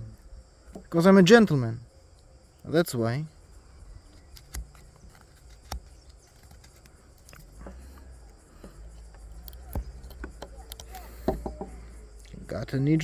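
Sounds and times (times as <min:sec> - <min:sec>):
knife carving wood clicks: 0:04.1 - 0:07.5, 0:08.3 - 0:11.7.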